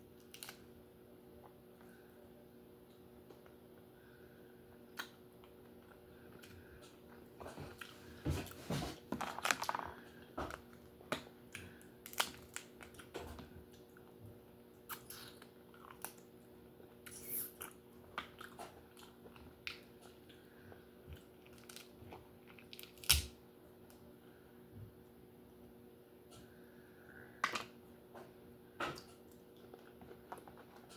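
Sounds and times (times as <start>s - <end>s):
lobster shell cracking: 12.0s - 13.0s, 22.6s - 23.3s
chewing: 17.0s - 20.4s.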